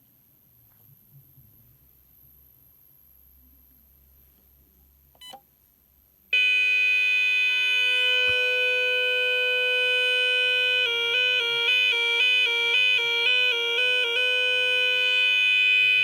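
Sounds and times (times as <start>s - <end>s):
intruder alarm sounder: 6.4s - 16.0s.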